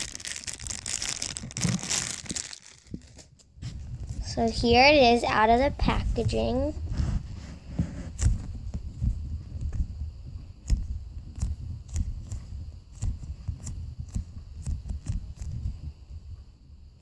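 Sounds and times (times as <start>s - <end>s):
foam toy handling noise: 0.0s - 3.8s.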